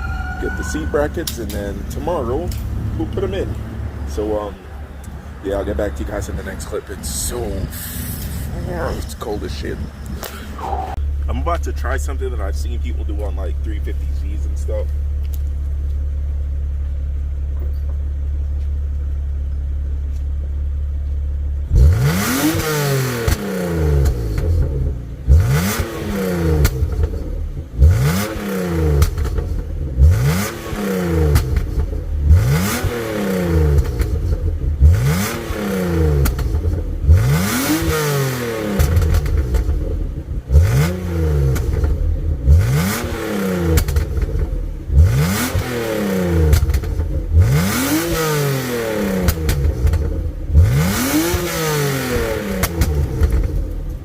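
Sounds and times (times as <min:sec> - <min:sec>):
car engine idling: 0:00.0 - 0:54.0
car engine revving: 0:20.1 - 0:54.0.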